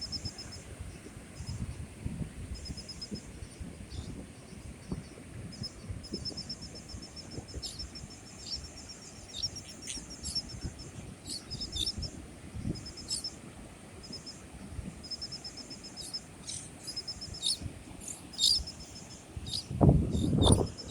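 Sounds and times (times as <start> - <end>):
sharp bird chips: 16.5 - 18.6
high-pitched bird trills: 18.3 - 18.7, 19.5 - 20.9.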